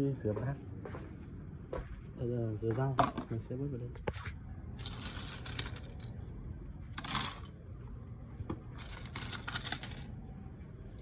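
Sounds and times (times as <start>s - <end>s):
plastic keycaps clattering: 4.8s - 6.1s, 7.0s - 7.5s, 8.8s - 10.1s.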